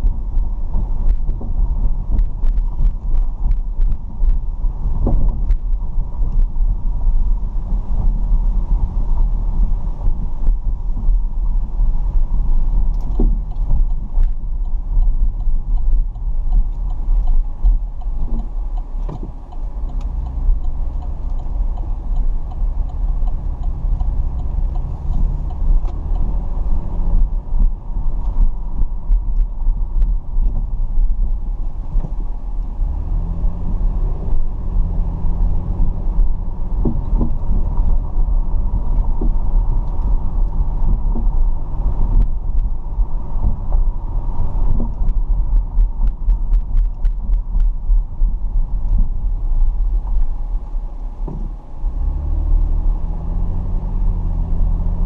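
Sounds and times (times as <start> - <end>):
car driving rumble: 0.0 - 55.0
faint ticks: 12.9 - 27.0.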